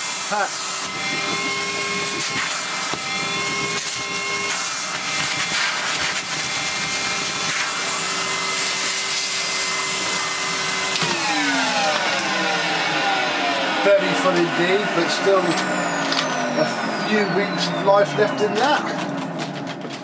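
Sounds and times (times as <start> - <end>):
vacuum cleaner motor humming: 0.0 - 20.0.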